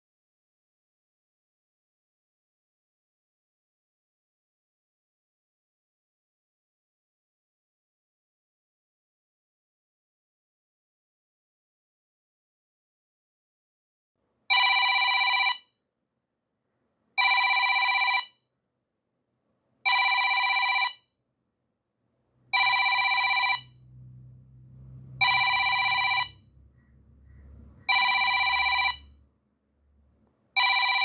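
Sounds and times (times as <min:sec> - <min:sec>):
timer alarm ringing: 0:22.6 - 0:23.7, 0:25.2 - 0:26.4, 0:27.9 - 0:29.1, 0:30.6 - 0:31.0.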